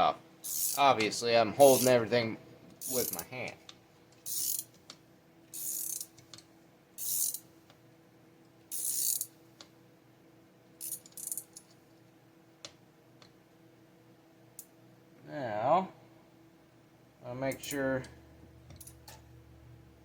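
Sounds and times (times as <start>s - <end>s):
tool pressing in raspy bursts: 0.5s - 0.9s, 1.6s - 2.0s.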